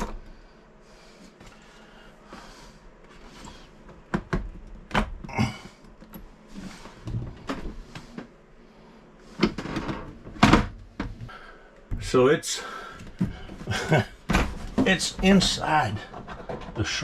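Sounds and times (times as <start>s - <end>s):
tools and plastic parts clattering: 13.0s - 16.9s.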